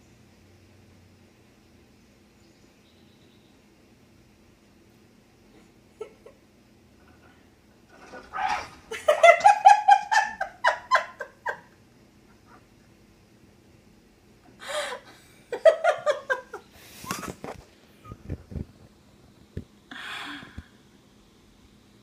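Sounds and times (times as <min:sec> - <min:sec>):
people laughing: 0:08.0 - 0:11.8, 0:14.6 - 0:17.4
breathing out: 0:19.9 - 0:20.8.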